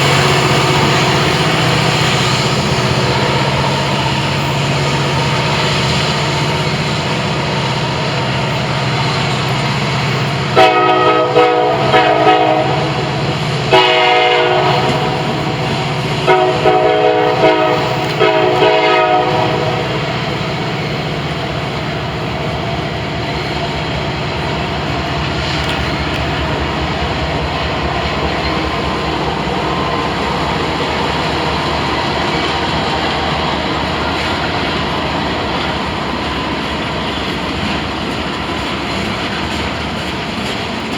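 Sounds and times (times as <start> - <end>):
diesel engine drone: 0.0 - 36.3
locomotive air horn toots and blasts: 10.1 - 20.3.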